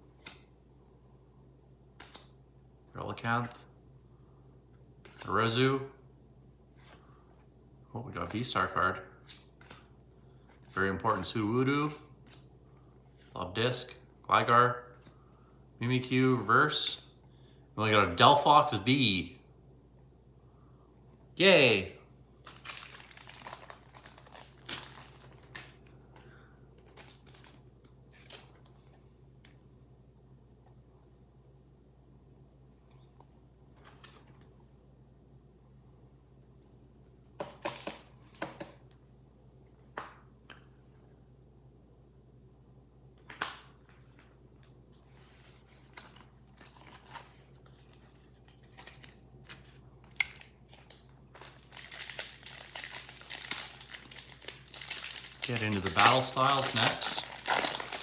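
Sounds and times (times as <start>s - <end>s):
foil wrapper crinkling and tearing: 22.4s - 25.9s, 26.9s - 28.6s, 46.0s - 58.0s
trading cards rustling: 22.4s - 28.7s, 45.0s - 58.0s.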